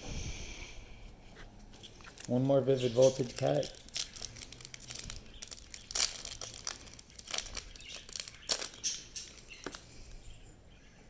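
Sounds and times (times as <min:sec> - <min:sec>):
foil wrapper crinkling and tearing: 0:01.8 - 0:09.8.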